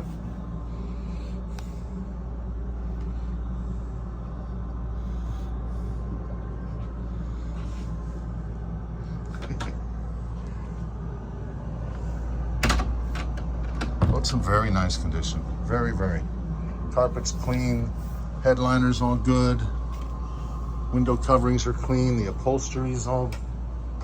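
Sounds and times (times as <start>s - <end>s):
air conditioning hum: 0.0s - 24.0s.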